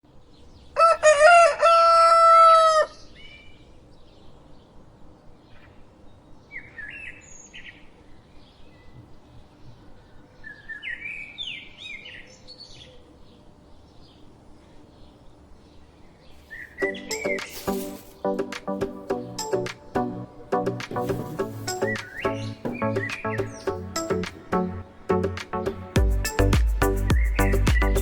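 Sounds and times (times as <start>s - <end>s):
rooster crowing: 0.8s - 3.0s
high bird chirps: 16.4s - 28.0s.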